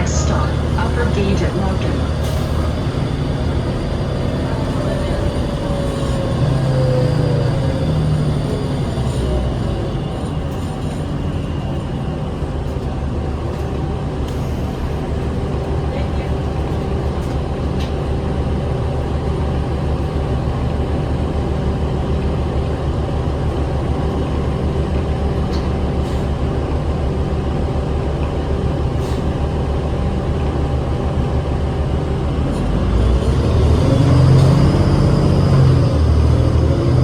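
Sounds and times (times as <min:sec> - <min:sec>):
bus engine from inside: 0:00.0 - 0:37.0.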